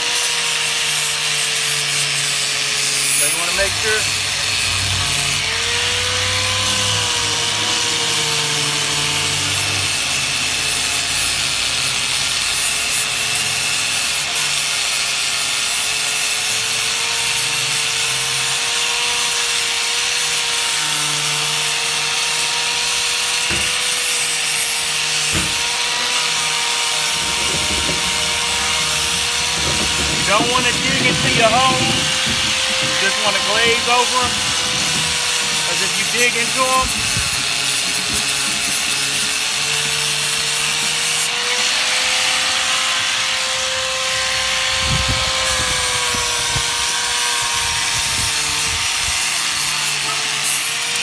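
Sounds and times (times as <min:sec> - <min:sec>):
power sander grinding filler: 0:00.0 - 0:51.0.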